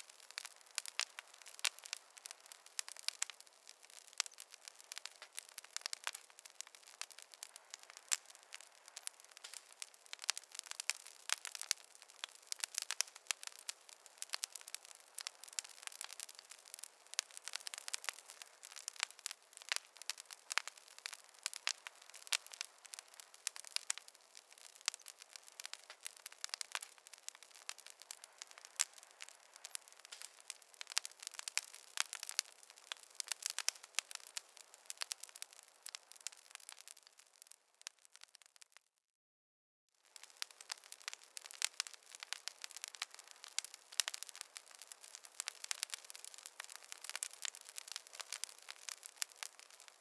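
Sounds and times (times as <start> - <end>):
campfire crackling: 0.0 - 38.8, 40.0 - 50.0.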